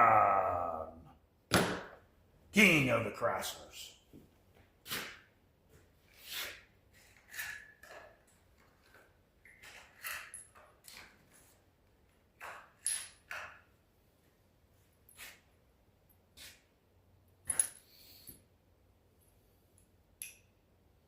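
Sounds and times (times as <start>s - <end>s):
light metallic clinks of tools: 19.8s - 20.6s.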